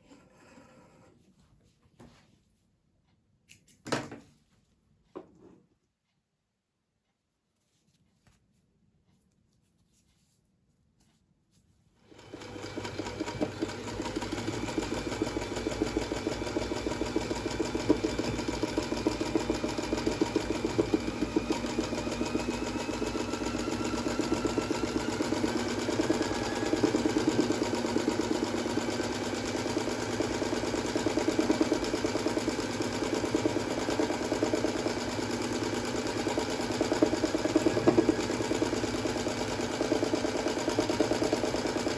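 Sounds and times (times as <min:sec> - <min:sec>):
electric sewing machine running: 0:12.1 - 0:41.9.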